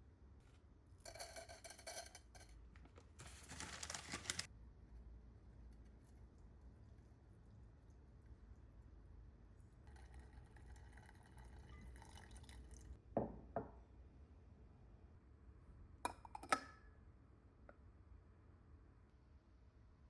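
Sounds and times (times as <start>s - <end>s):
tea pouring into glass: 9.8s - 13.0s.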